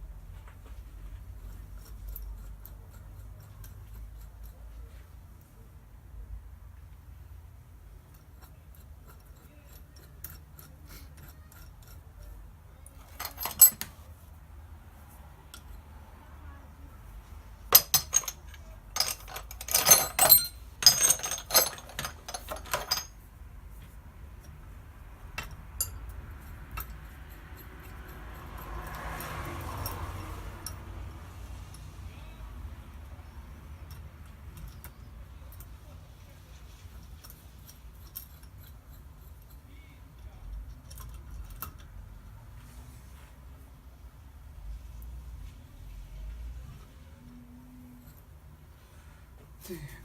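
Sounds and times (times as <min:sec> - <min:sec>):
metal hand tools clinking: 0:08.1 - 0:14.0, 0:17.7 - 0:23.2, 0:25.4 - 0:30.8, 0:36.9 - 0:41.9.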